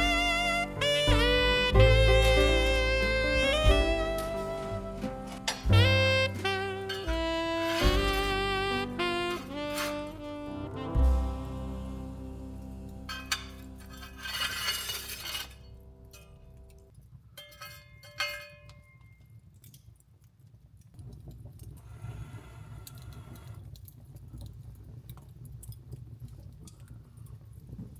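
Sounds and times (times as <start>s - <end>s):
jazz music: 0.0s - 16.8s
faint low rustle: 0.0s - 16.9s.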